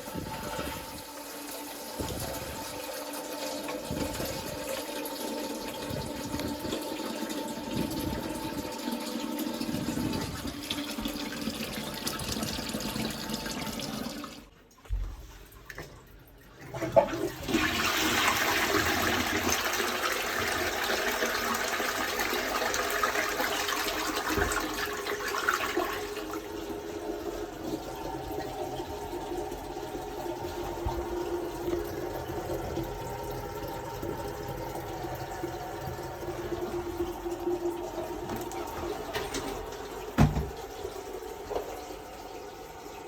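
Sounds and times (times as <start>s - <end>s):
toilet flushing: 0.0s - 43.0s
toilet tank refilling: 0.0s - 43.0s
water running: 0.0s - 43.0s
toilet clunk: 38.0s - 41.8s.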